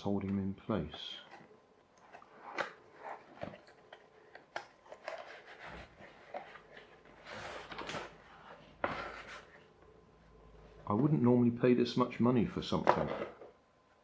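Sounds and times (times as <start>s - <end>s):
packaging rustling and clicking: 2.0s - 8.2s.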